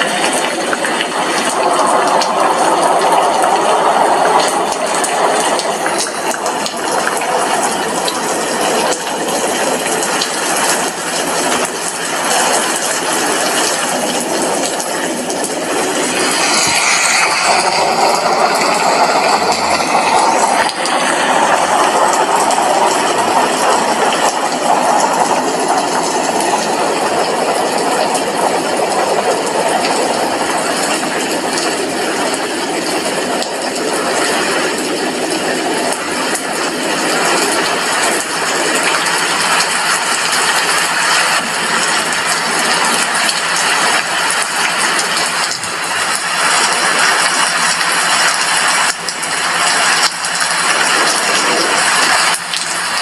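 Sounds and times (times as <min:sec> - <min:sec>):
heavy rain on a glass window: 0:00.0 - 0:53.0.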